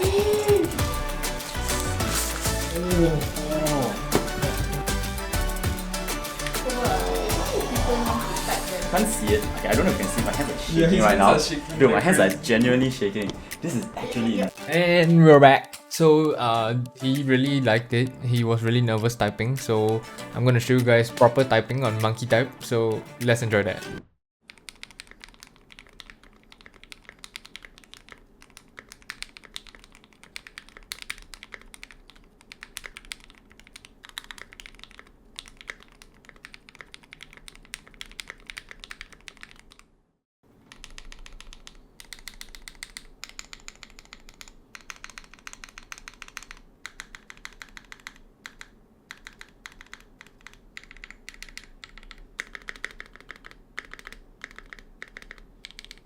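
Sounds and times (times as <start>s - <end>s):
mechanical keyboard typing: 24.5s - 39.9s, 40.7s - 56.0s.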